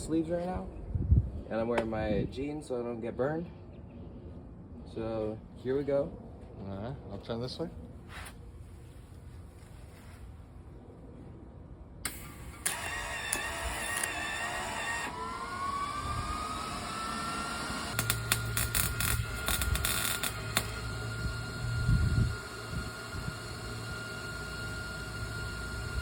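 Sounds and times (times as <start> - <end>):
welder high whine: 12.0 - 26.0
welding arc crackling: 12.1 - 15.1, 17.8 - 26.0.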